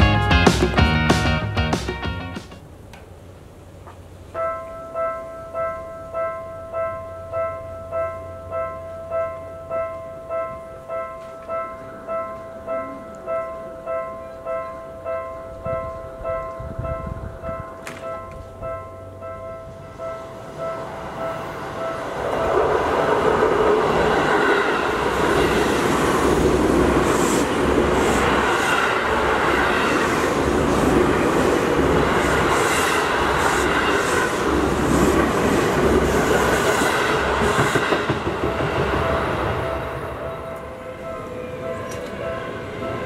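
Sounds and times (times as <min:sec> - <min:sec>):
crossing warning bell ringing: 0:04.3 - 0:43.0
train wheels clacking over rail joints: 0:22.4 - 0:39.8.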